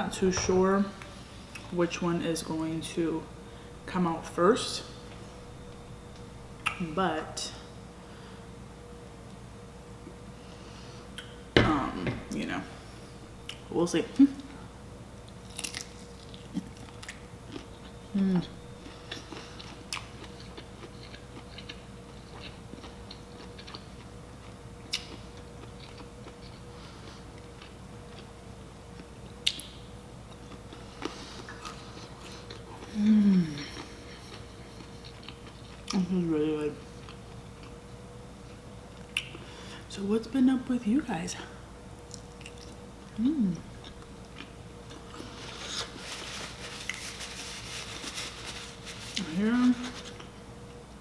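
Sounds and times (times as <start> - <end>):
soft chewing: 15.3 - 28.3, 30.3 - 36.2, 36.8 - 39.4, 42.1 - 50.4
food rustling and clicking: 44.9 - 50.3.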